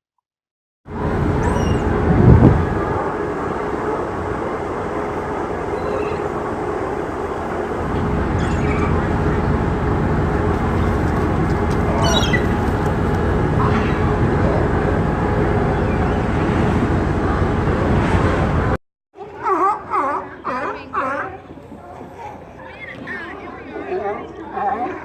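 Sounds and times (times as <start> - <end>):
waterfront low rumble: 0.9 - 25.0
gulls calling: 1.3 - 2.1, 3.6 - 16.5.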